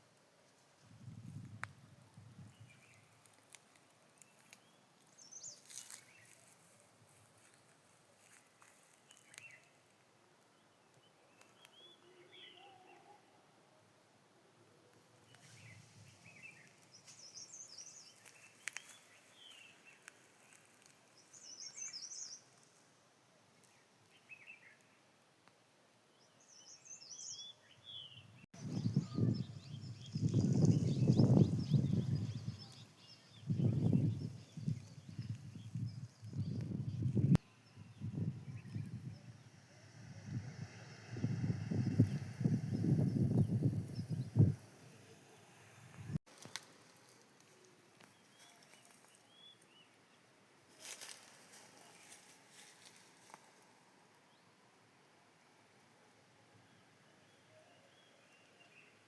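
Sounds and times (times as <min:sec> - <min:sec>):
small birds chirping: 0:01.1 - 0:13.2, 0:15.0 - 0:22.8, 0:26.1 - 0:50.2.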